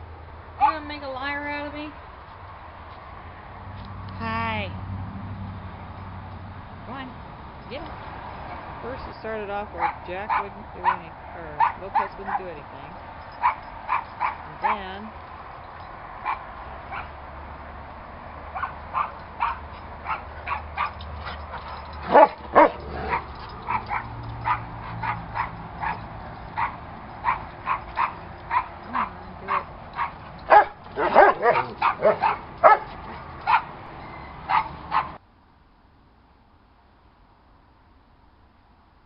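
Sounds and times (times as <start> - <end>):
dogs barking and yipping: 9.7 - 35.2.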